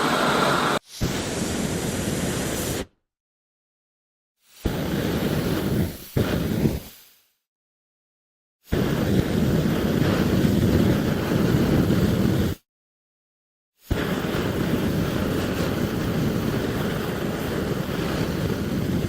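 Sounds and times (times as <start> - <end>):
flamethrower blasts: 0.0 - 2.9, 4.5 - 7.2, 8.7 - 12.6, 13.9 - 19.0.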